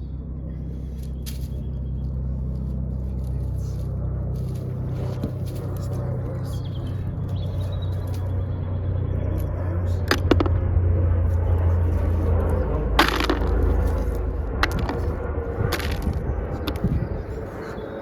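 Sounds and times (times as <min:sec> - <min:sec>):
steady low rumble: 0:00.0 - 0:18.0
sharp knocks and clicks: 0:10.0 - 0:10.8, 0:13.0 - 0:15.0.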